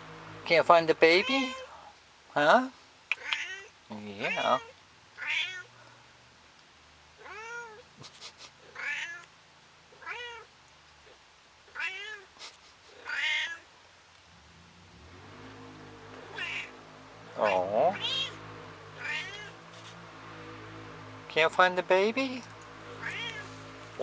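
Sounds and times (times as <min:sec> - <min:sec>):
cat meowing: 0:01.2 - 0:01.8, 0:03.1 - 0:05.7, 0:07.2 - 0:07.8, 0:08.7 - 0:09.3, 0:10.0 - 0:10.5, 0:11.7 - 0:12.3, 0:13.0 - 0:13.6, 0:16.2 - 0:16.8, 0:17.4 - 0:18.4, 0:19.0 - 0:19.6, 0:23.0 - 0:23.5
low drone: 0:14.4 - 0:24.0.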